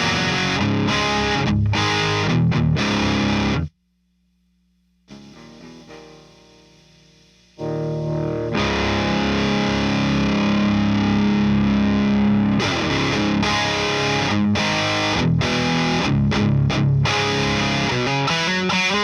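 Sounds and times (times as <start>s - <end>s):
distorted electric guitar chords: 0.0s - 3.7s, 5.1s - 19.0s.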